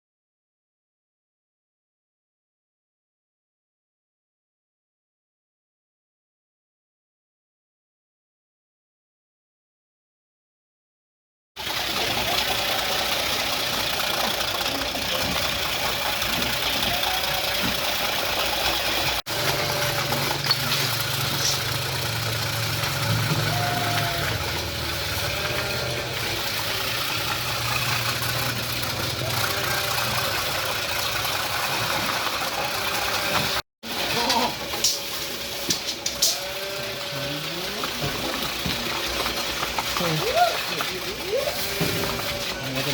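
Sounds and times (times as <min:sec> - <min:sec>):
shredding machine whirring: 0:11.6 - 0:42.9.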